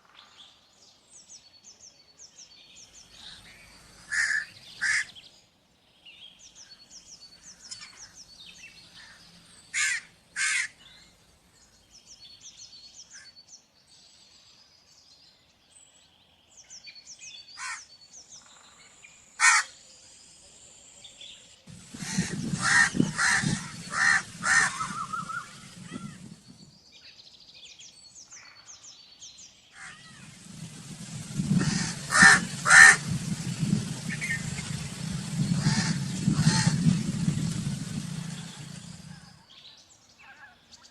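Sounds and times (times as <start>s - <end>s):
high birds twittering: 1.5s - 5.4s, 21.0s - 26.9s, 28.2s - 40.9s
background rushing noise: 2.9s - 5.2s, 21.7s - 26.8s, 29.8s - 39.4s
crows cawing: 4.1s - 5.1s, 9.8s - 10.8s, 17.6s - 17.8s, 19.4s - 19.7s, 21.9s - 26.0s, 31.6s - 33.1s, 35.6s - 36.9s.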